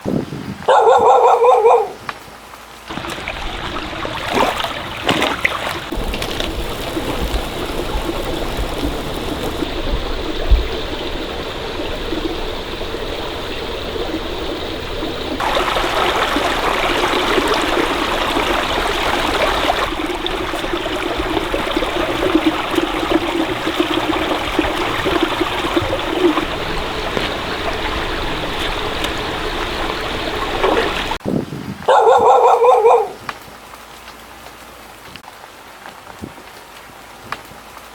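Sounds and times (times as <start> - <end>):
stream water flowing: 1.2 - 31.2.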